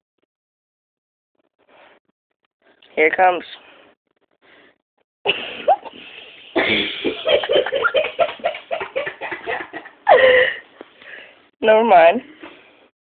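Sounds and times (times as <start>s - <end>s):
group of young people laughing: 5.3s - 10.6s.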